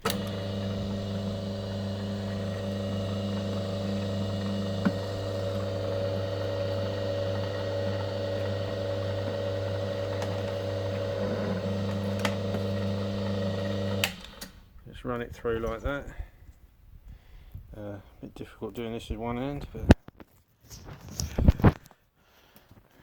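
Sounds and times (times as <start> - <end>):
machine motor hum: 0.0 - 14.6.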